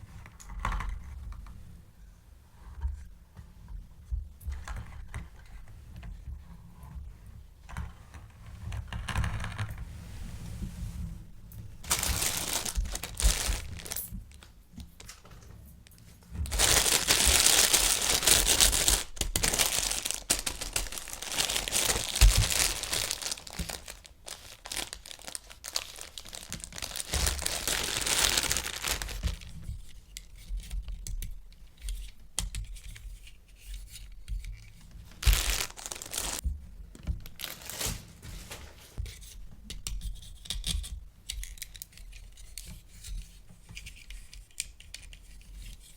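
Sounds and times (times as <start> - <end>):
packaging tearing and rustling: 11.8 - 15.2, 16.4 - 29.7, 35.0 - 36.4, 37.2 - 38.8.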